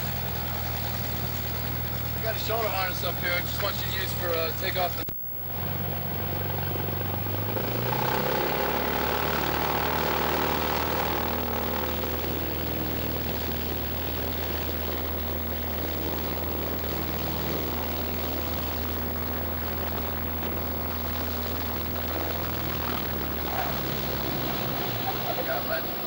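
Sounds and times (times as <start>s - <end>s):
propeller plane engine drone: 0.0s - 26.0s.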